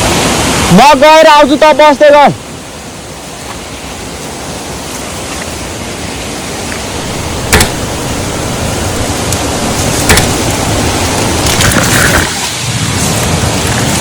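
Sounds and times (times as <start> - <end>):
waterfall rushing water: 0.0 - 14.0
sharp knock: 7.4 - 8.7, 9.8 - 10.7.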